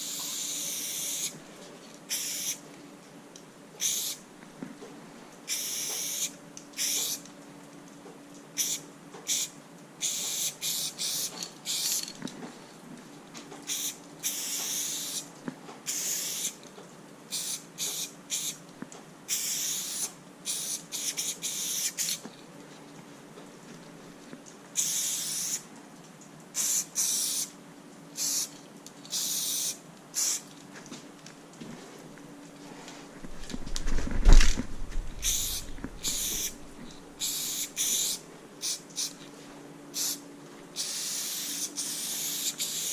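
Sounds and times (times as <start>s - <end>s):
spray paint can spraying: 0.0s - 1.4s, 2.1s - 2.6s, 3.8s - 4.2s, 5.5s - 7.2s, 8.6s - 12.1s, 13.7s - 15.3s, 15.9s - 16.6s, 17.3s - 18.6s, 19.3s - 22.2s, 24.8s - 25.6s, 26.6s - 27.5s, 28.2s - 30.5s, 35.2s - 39.2s, 40.0s - 40.2s, 40.8s - 42.9s
faint steady hum: 0.0s - 42.9s.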